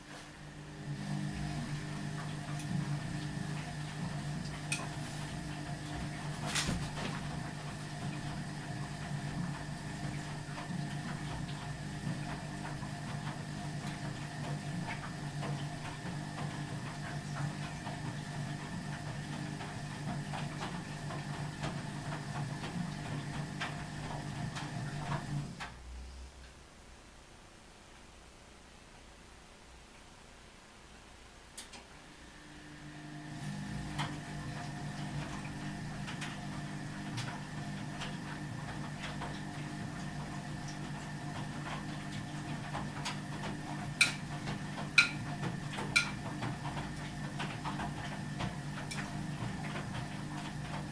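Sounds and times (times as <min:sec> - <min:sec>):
washing machine humming: 0:00.0 - 0:27.6, 0:30.9 - 0:50.9
washing machine clatter: 0:00.8 - 0:25.9, 0:33.2 - 0:50.9
washing machine knocking: 0:01.0 - 0:25.8, 0:33.3 - 0:50.9.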